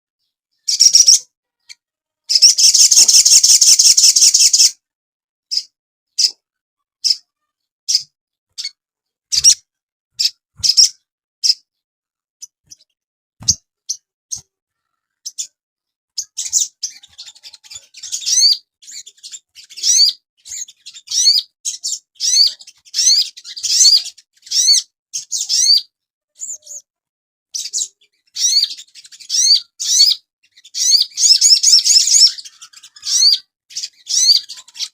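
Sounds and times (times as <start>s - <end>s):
sunbird trilling and twittering: 0.6s - 4.8s, 16.2s - 26.8s, 27.6s - 34.9s.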